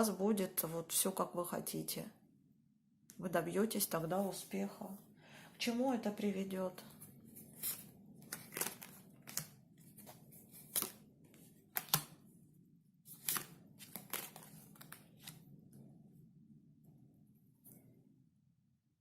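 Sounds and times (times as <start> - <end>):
cards swishing and snapping: 7.4 - 11.1, 11.7 - 12.2, 13.1 - 15.4.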